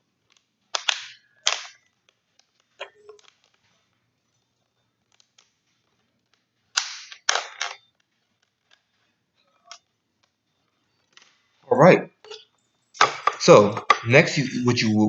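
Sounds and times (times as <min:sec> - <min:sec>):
loud sharp cracks: 0:00.7 - 0:01.8, 0:06.8 - 0:07.6
plastic bottle crackling: 0:13.0 - 0:14.1.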